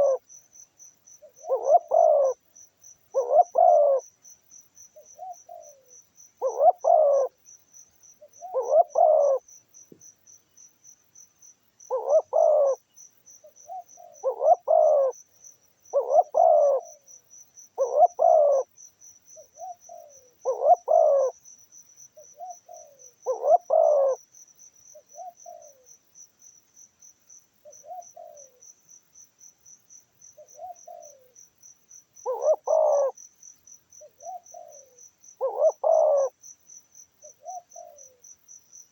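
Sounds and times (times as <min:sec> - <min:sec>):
doves cooing: 0:00.0 - 0:00.2, 0:01.3 - 0:02.4, 0:03.1 - 0:04.0, 0:06.4 - 0:07.4, 0:08.4 - 0:09.4, 0:11.9 - 0:12.8, 0:13.6 - 0:15.2, 0:15.9 - 0:17.0, 0:17.8 - 0:18.7, 0:19.6 - 0:21.4, 0:22.4 - 0:24.2, 0:27.7 - 0:28.6, 0:30.4 - 0:31.3, 0:32.2 - 0:33.2, 0:34.0 - 0:36.4, 0:37.3 - 0:38.2
high insect chirping: 0:00.0 - 0:38.9.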